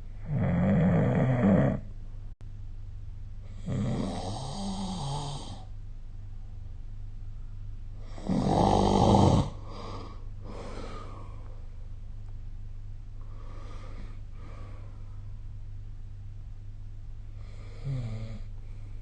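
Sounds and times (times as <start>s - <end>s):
steady low hum: 0.0s - 19.0s
person snoring: 0.2s - 1.9s, 3.5s - 5.7s, 8.0s - 11.5s, 17.4s - 18.8s.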